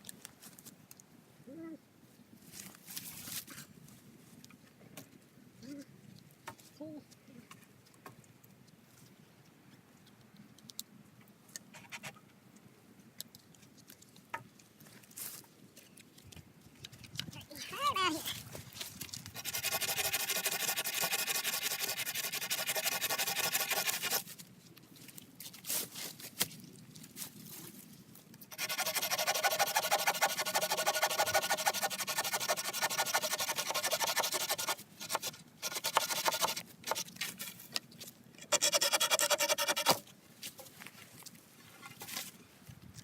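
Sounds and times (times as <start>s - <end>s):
hand saw cutting wood: 19.4s - 24.3s, 28.5s - 37.1s, 38.4s - 40.1s.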